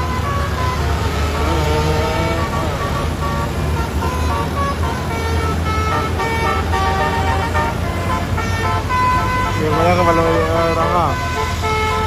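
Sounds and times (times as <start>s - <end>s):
low engine hum: 0.0s - 12.0s
multi-tone bus horn tune: 0.0s - 12.0s.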